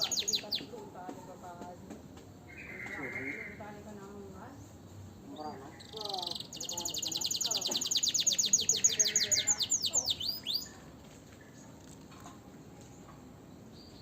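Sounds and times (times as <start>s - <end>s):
songbird singing trill: 0.0s - 0.8s, 2.5s - 3.8s, 5.2s - 10.9s, 13.3s - 14.0s.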